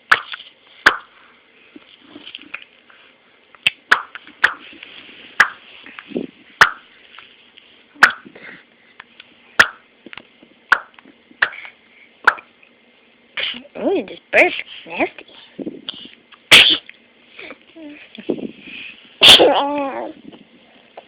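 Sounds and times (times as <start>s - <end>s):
baby popping lips: 0.1s - 1.1s, 3.6s - 4.6s, 8.0s - 8.4s, 9.6s - 9.8s, 10.7s - 12.5s.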